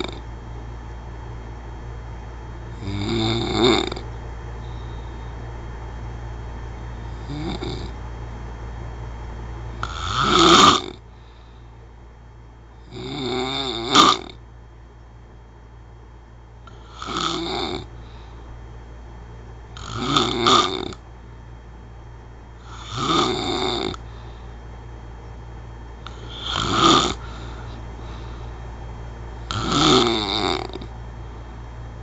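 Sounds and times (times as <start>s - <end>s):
loud snores: 0.0s - 0.2s, 2.7s - 4.1s, 7.0s - 8.0s, 9.8s - 11.0s, 12.8s - 14.4s, 16.7s - 17.9s, 19.8s - 21.0s, 22.6s - 24.0s, 26.1s - 27.8s, 29.4s - 30.9s.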